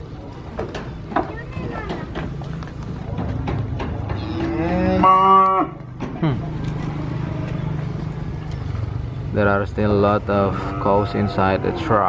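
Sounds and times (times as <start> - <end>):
scattered knocks: 0.6 - 4.6
cow mooing: 4.1 - 5.8, 10.5 - 12.0.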